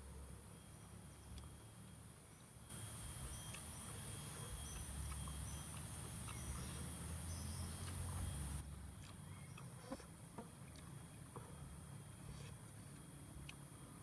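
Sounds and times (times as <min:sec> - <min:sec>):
high-pitched insect buzz: 0:02.7 - 0:08.6.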